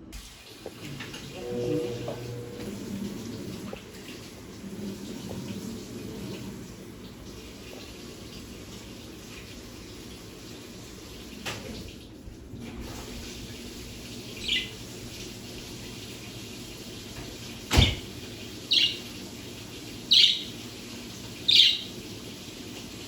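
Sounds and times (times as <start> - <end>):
budgerigar chirping: 20.1 - 20.5, 21.5 - 21.8.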